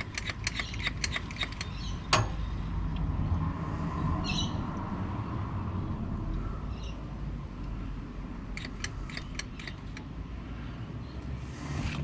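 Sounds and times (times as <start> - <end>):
hand pump handle clicking: 0.0 - 2.3, 8.6 - 10.1
low steady rumble: 0.0 - 12.0.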